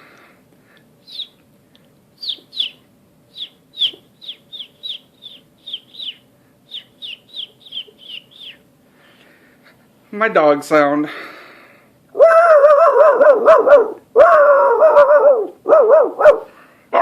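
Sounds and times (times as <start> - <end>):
man imitating chicks peeping: 1.1 - 1.4, 2.2 - 8.6, 12.1 - 13.1.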